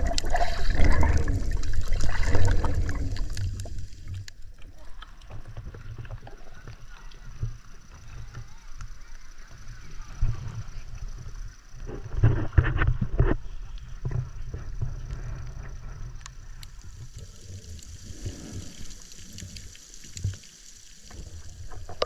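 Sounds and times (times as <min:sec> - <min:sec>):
sea water splashing: 0:00.0 - 0:07.3, 0:16.7 - 0:22.0.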